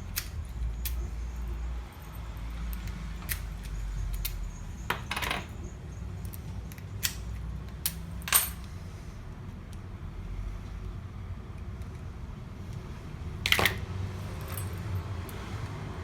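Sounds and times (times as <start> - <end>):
metal lock parts clicking: 0.0 - 8.7, 13.4 - 15.8.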